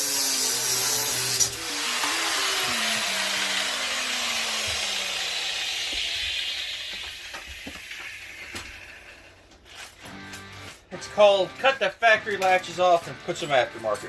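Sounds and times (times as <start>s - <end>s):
power tool motor winding down: 0.0s - 10.7s.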